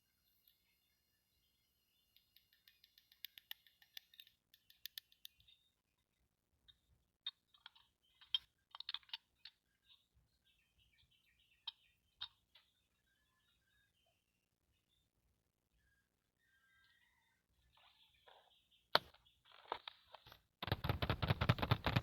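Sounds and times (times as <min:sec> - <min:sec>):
plastic toy pieces clicking: 0:02.2 - 0:05.5, 0:07.3 - 0:09.6, 0:20.6 - 0:22.0.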